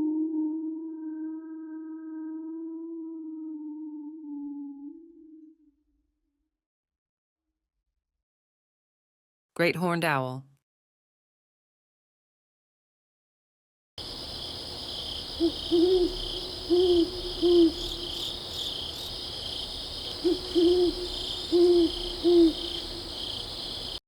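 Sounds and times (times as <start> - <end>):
high-pitched insect trilling: 14.0 - 24.0
owl hooting: 14.0 - 24.0.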